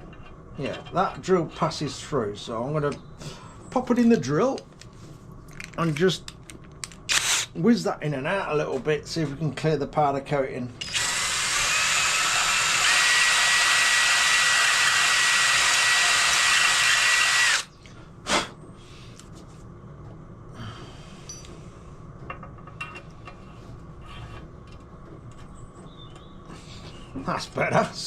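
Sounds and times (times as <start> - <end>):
electric drill running: 7.1 - 7.5, 10.8 - 17.7.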